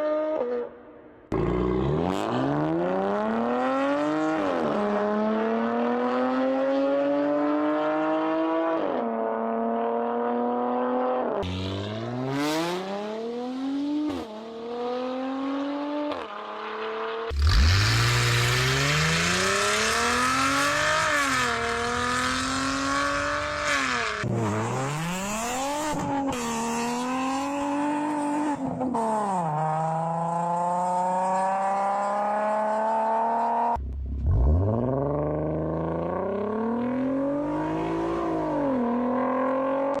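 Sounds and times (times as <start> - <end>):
car engines accelerating hard: 1.3 - 40.0.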